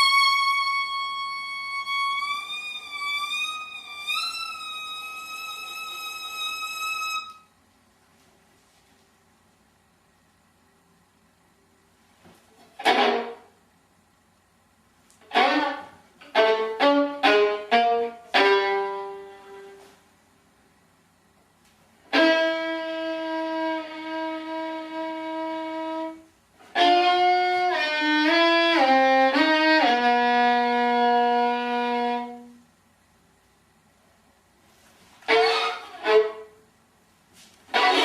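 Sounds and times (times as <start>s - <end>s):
violin playing: 0.0s - 7.5s, 12.8s - 13.5s, 15.2s - 19.8s, 22.1s - 32.6s, 35.2s - 36.6s, 37.7s - 38.0s.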